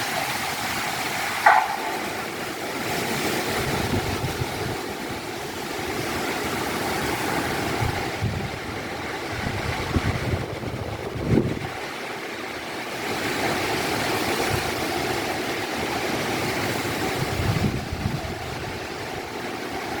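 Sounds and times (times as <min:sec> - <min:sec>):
wind buffeting microphone: 0:00.0 - 0:20.0
gusty wind rushing: 0:01.4 - 0:06.4, 0:07.3 - 0:12.2.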